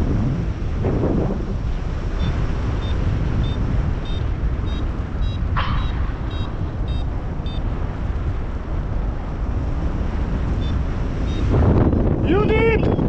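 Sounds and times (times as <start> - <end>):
wind buffeting microphone: 0.0 - 13.0
high electronic beeps: 2.2 - 7.6, 10.6 - 11.5.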